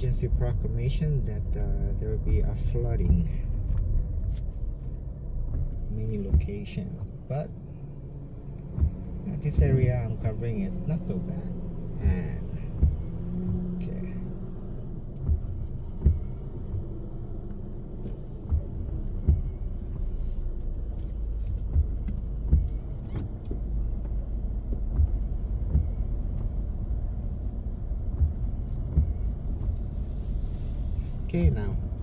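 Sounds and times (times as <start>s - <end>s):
low rumble in car cabin: 0.0s - 32.0s
short thumps: 18.0s - 27.5s.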